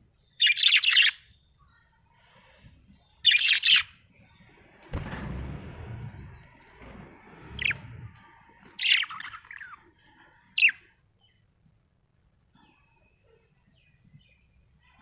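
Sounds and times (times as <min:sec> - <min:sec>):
budgerigar chirping: 0:00.3 - 0:01.4
low rumbling noise: 0:04.1 - 0:09.8.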